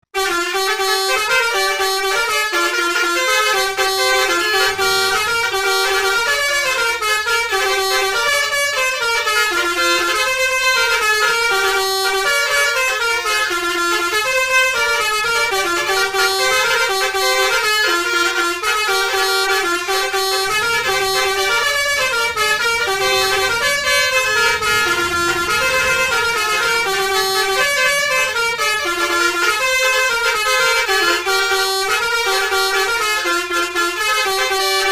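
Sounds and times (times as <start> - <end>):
bus musical horn playing tune: 0.1 - 34.9
low rumble: 19.0 - 29.4.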